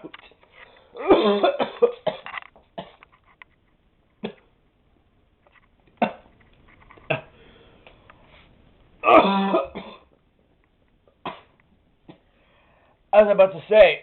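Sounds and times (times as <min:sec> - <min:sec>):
man coughing: 0:01.0 - 0:03.0, 0:09.0 - 0:10.1.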